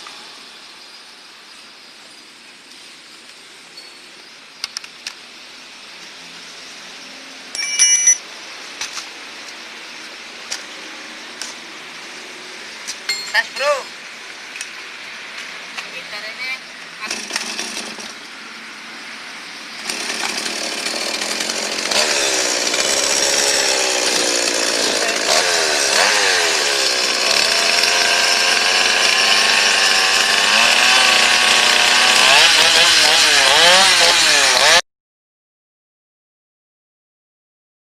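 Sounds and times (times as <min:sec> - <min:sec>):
chainsaw revving: 0:17.0 - 0:18.2, 0:19.8 - 0:34.8.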